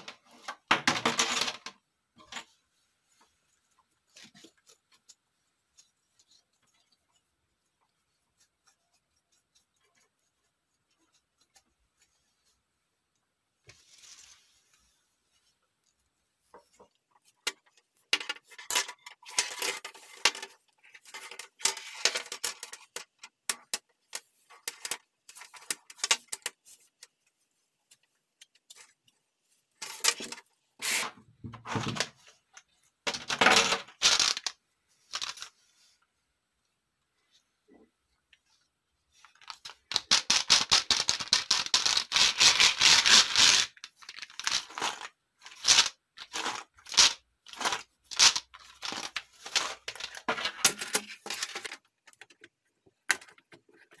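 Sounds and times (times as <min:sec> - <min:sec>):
plastic keyboard parts clattering: 0:00.0 - 0:02.5, 0:44.1 - 0:54.0.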